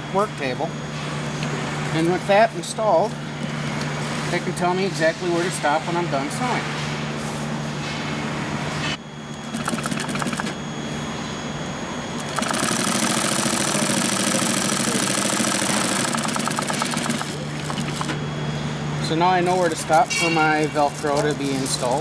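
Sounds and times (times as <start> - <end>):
constant low hum: 0.0 - 22.0
sewing machine stitching: 9.5 - 10.6, 12.3 - 18.2.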